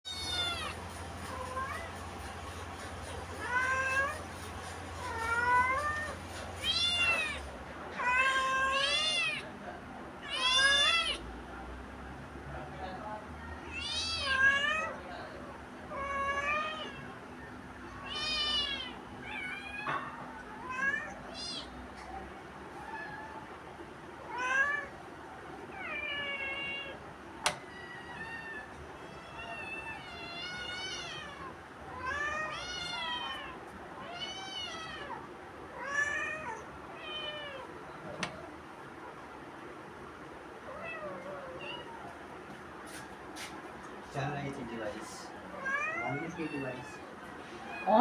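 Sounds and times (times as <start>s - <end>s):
cat meowing: 0.1s - 1.9s, 3.4s - 4.3s, 5.0s - 9.5s, 10.2s - 11.2s, 13.6s - 15.0s, 15.9s - 17.2s, 17.9s - 21.8s, 24.2s - 25.0s, 25.7s - 27.0s, 27.6s - 37.8s, 40.7s - 42.2s, 45.3s - 48.0s.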